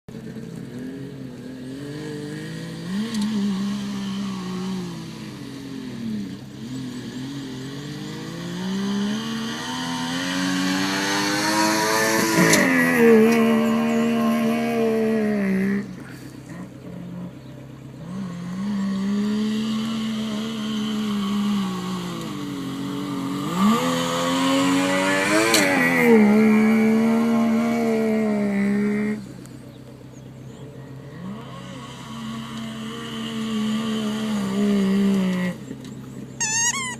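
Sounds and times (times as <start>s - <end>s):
two-stroke engine revving: 0.1s - 36.9s.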